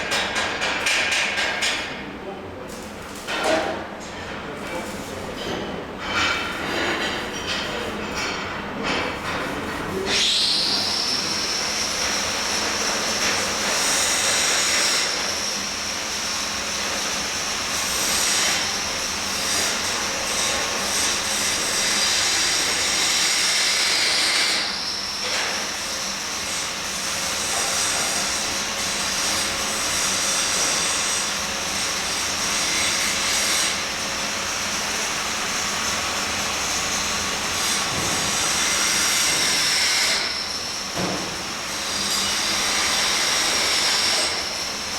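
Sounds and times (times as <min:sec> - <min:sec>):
angle grinder on steel: 0:41.6 - 0:44.8.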